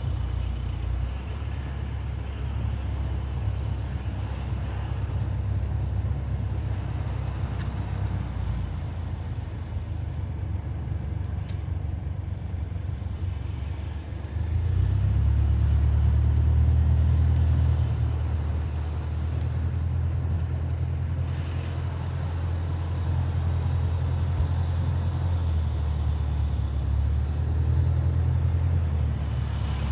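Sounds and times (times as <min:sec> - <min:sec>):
car driving road rumble: 0:00.0 - 0:29.9.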